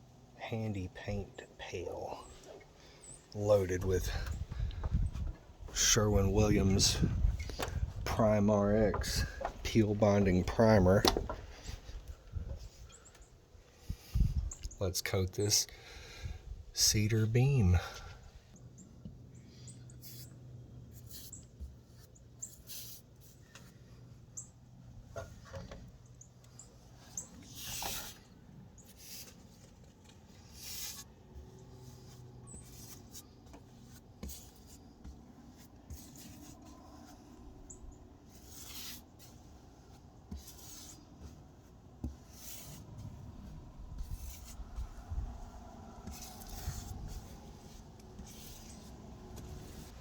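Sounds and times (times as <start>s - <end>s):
paintbrush swishing on wood: 26.9s - 50.0s.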